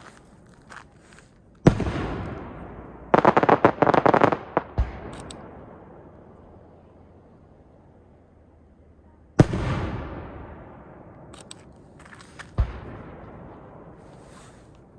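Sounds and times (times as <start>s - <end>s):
crackling fireworks reports: 0.0s - 7.4s, 12.0s - 14.9s
fireworks bangs: 1.6s - 6.0s, 9.4s - 11.3s.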